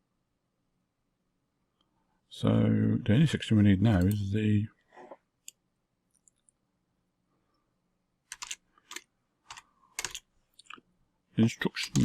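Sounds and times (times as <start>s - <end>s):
keyboard typing: 8.3s - 10.3s.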